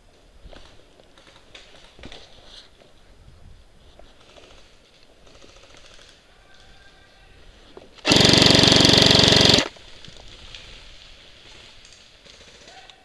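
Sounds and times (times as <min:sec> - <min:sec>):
airsoft rifle full-auto burst: 0:08.0 - 0:09.7.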